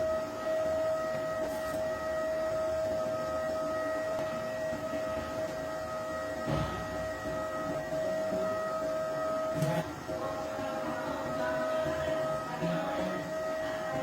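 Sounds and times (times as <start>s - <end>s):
electronic alarm buzzer: 0.0s - 10.0s.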